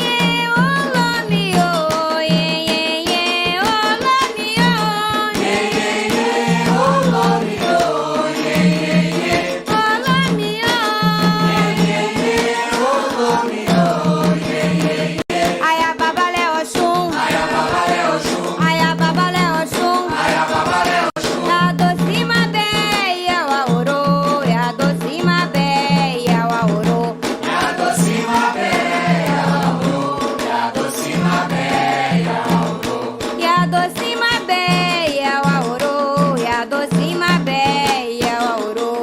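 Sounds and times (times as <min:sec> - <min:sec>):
pulsing drums and percussion: 0:00.0 - 0:39.0
voices singing: 0:04.2 - 0:22.4, 0:27.4 - 0:35.2.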